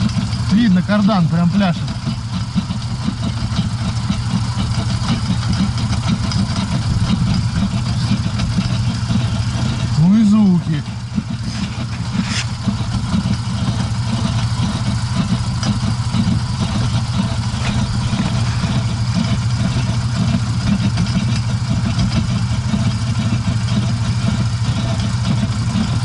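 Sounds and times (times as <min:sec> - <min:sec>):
car engine idling: 0:00.0 - 0:26.0
driveline knocking and rattling: 0:01.8 - 0:09.9.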